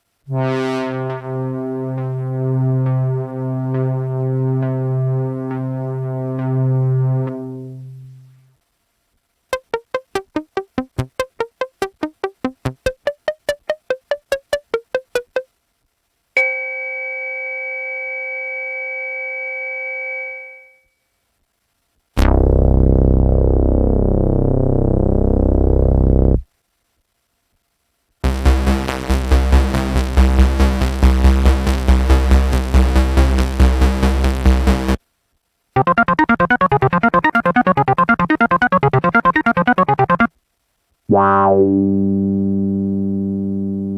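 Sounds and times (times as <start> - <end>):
buzzy synth bass tone: 0.3 - 7.8, 22.2 - 26.4, 28.2 - 35.0, 35.8 - 40.3
synthesizer short repeated notes: 9.5 - 15.4, 35.8 - 40.3
rapidly pulsing synth sound: 28.2 - 35.0, 35.8 - 40.3.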